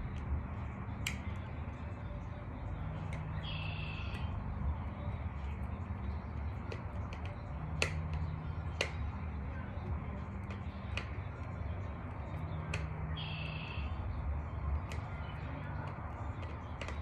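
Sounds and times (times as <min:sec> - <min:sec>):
sharp clicks and taps: 0:00.0 - 0:01.8, 0:05.3 - 0:13.2, 0:13.8 - 0:17.0
steady low hum: 0:00.0 - 0:17.0.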